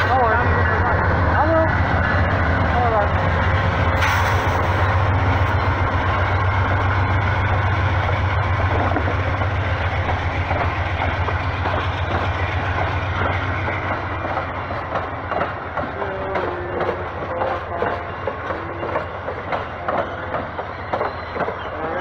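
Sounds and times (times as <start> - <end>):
train rumbling past: 0.0 - 22.0
wheels clacking over rails: 8.6 - 22.0.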